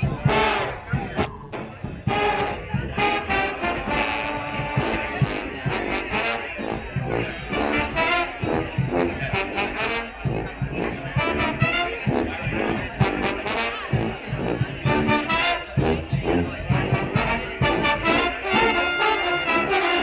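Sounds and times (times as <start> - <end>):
brass band playing: 0.0 - 20.0.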